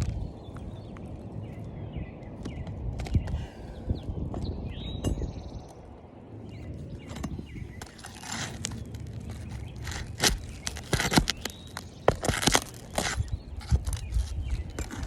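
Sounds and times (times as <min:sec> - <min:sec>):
roof shingles scraping and crackling: 0:07.0 - 0:15.0.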